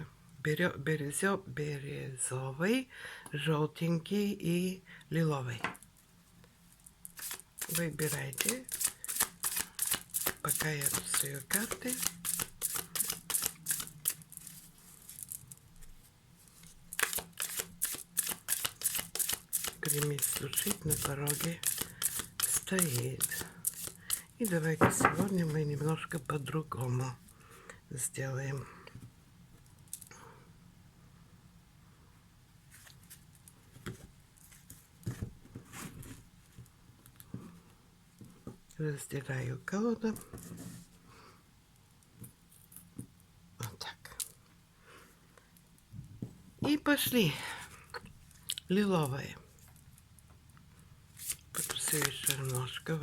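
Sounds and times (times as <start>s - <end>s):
cards being shuffled: 7.0s - 15.5s, 16.5s - 25.6s, 51.2s - 52.9s.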